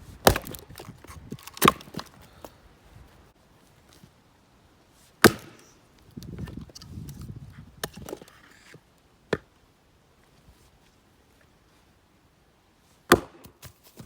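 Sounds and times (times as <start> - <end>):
axe hitting firewood: 0.2 - 2.1, 5.2 - 5.6, 13.1 - 13.7.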